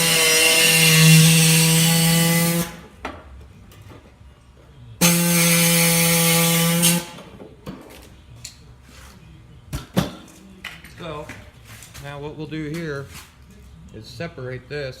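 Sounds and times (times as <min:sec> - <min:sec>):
power cutter whining on metal: 0:00.0 - 0:02.8, 0:05.0 - 0:07.1.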